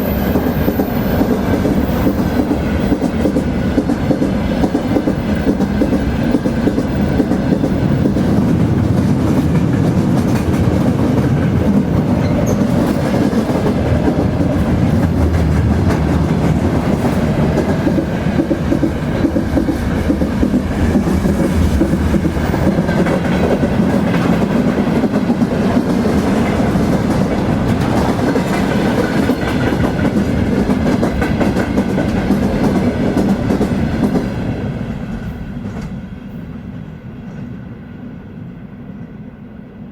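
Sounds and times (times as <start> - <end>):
train rumble: 0.0 - 39.9
wheels clacking over rail joints: 0.1 - 34.3.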